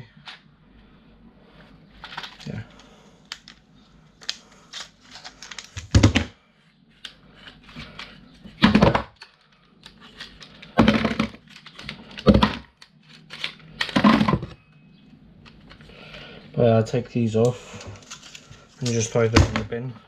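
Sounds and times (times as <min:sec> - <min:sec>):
plastic and metal parts clattering: 0:02.0 - 0:03.6, 0:04.2 - 0:06.3, 0:07.4 - 0:14.6, 0:17.7 - 0:19.8.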